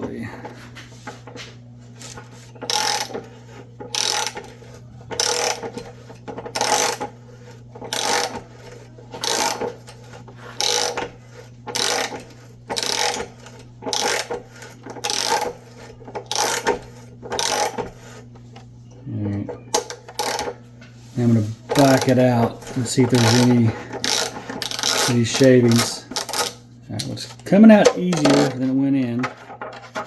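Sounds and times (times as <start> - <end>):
socket ratchet clicking: 2.7 - 3.2, 3.9 - 4.4, 6.5 - 7.1, 11.7 - 13.2, 13.9 - 14.3, 15.0 - 15.5, 23.2 - 25.2.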